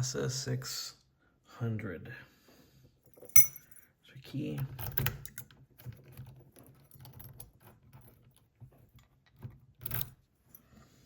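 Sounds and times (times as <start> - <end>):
key and lock clicking and rattling: 4.5 - 10.6.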